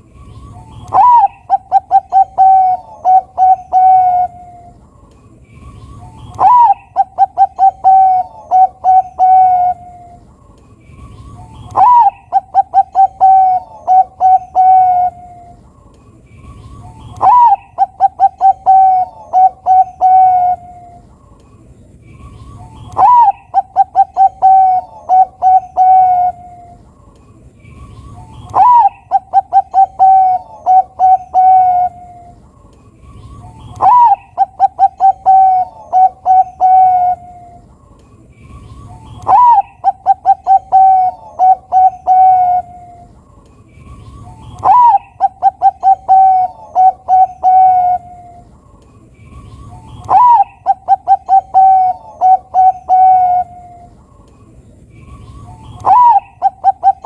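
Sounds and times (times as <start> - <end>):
dove cooing: 0.4 - 4.8, 5.9 - 10.3, 11.4 - 15.6, 16.7 - 21.0, 22.4 - 26.8, 28.3 - 32.4, 33.3 - 37.7, 38.6 - 43.2, 44.4 - 48.4, 49.6 - 53.9, 55.3 - 57.0.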